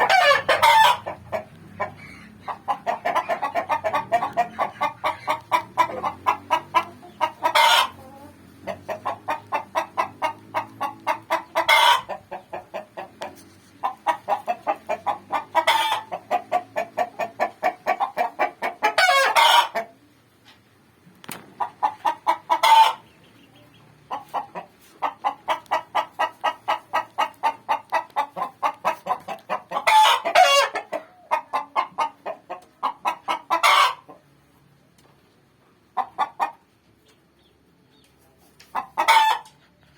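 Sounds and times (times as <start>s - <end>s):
hen cackling: 0.0s - 20.0s, 21.6s - 34.2s, 38.7s - 39.6s.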